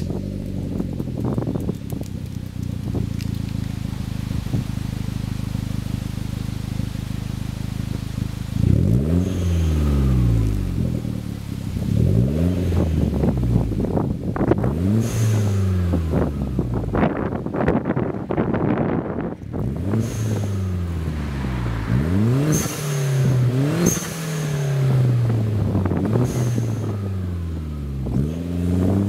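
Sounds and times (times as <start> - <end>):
car exhaust idling and revving: 0.0 - 29.0
wind on microphone: 11.8 - 23.9, 25.0 - 29.0.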